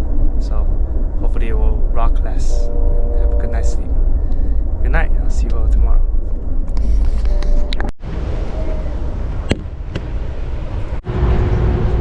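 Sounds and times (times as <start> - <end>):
steady hum: 0.0 - 7.9
train rumble and rattle: 0.0 - 12.0.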